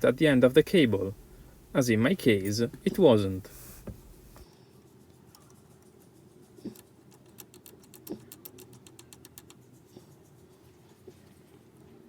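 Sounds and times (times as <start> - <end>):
faint knocks: 0.0 - 4.4.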